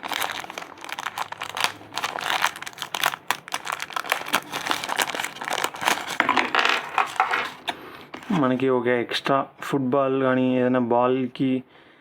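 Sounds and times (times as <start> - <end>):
plastic packaging crinkling: 0.0 - 8.6.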